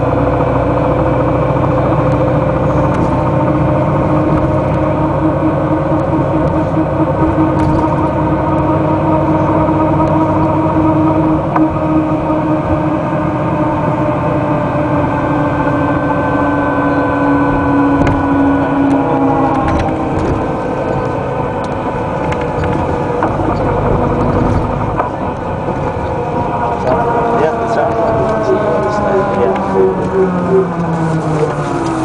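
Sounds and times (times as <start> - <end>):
bus engine hum: 0.0 - 32.0
knocks and rattles: 17.9 - 29.4.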